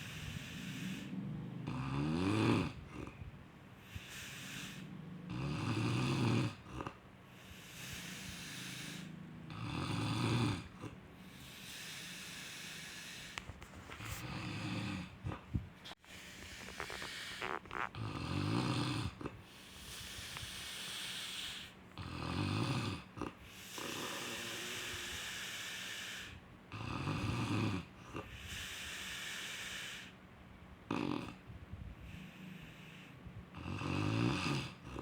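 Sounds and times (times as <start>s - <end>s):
person snoring: 0.0s - 3.2s, 3.8s - 13.4s, 16.1s - 30.1s, 32.2s - 35.0s.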